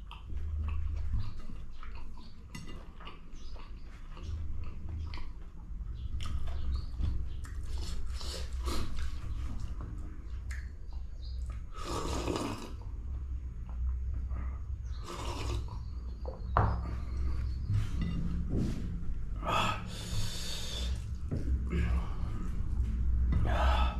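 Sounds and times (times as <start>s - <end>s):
person chewing: 7.4s - 9.3s.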